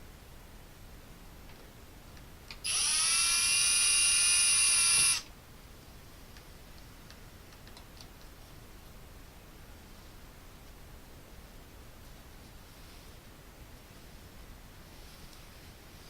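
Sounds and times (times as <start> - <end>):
electric drill spinning: 2.6 - 5.3.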